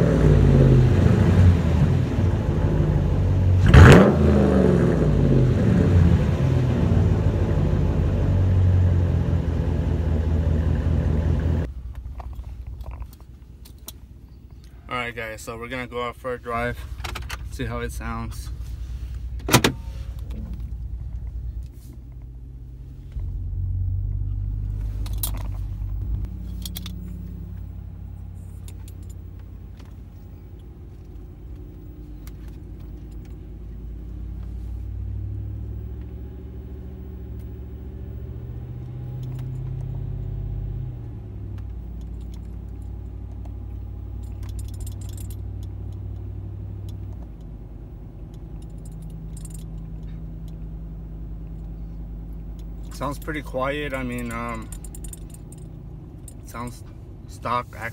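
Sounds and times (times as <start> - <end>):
low exhaust rumble: 0.0 - 57.9
light jingling clicks: 41.6 - 47.5, 48.3 - 50.6, 51.4 - 56.7.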